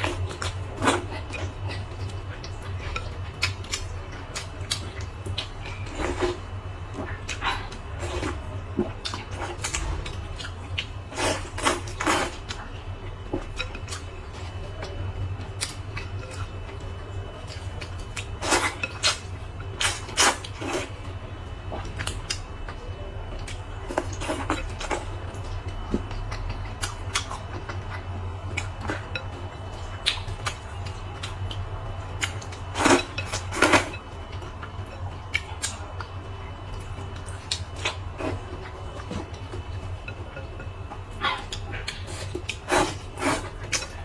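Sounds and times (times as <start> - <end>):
steady low hum: 0.0 - 44.0
utensils clinking against a bowl: 32.2 - 36.1, 36.7 - 44.0.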